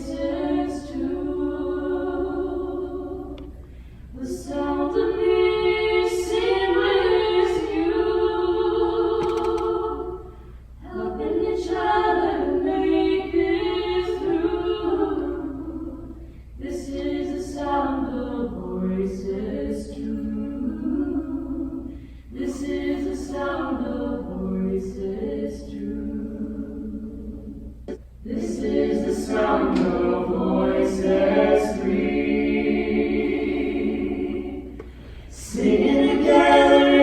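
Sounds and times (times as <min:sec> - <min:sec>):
choir singing a capella: 0:00.0 - 0:37.0.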